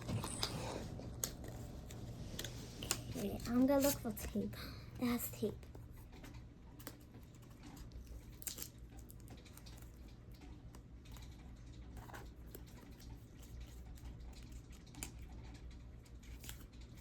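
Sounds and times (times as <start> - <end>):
tape being peeled: 5.6 - 10.1.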